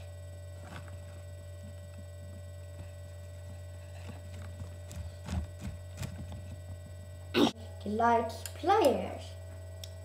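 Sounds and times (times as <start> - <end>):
mains hum: 0.0 - 10.0.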